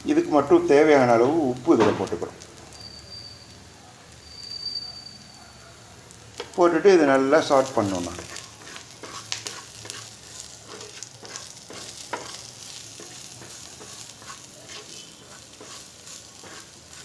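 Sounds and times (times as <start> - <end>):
food sizzling in oil: 0.0 - 17.0
stirring clicks and scrapes: 7.6 - 17.0.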